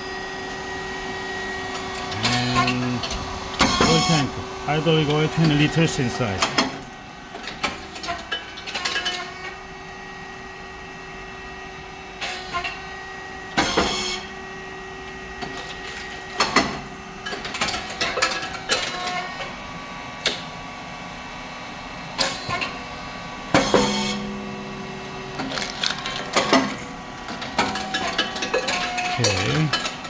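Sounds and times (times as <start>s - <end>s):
machine motor humming: 1.9s - 6.6s.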